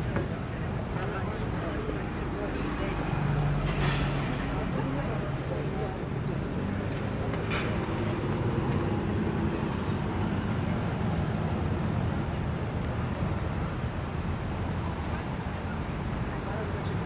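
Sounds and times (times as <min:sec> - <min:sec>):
vehicles passing: 0:00.0 - 0:17.0.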